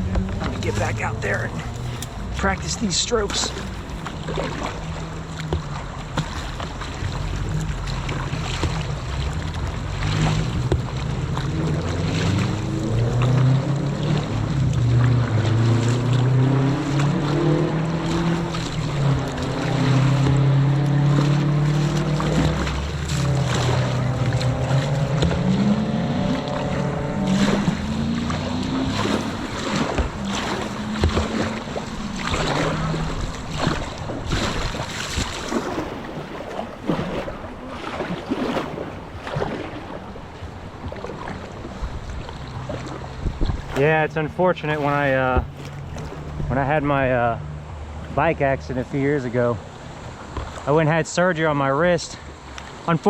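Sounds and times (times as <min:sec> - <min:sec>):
paddle strokes splashing: 0:00.0 - 0:53.0
rushing water: 0:00.0 - 0:53.0
wind on microphone: 0:07.1 - 0:43.8.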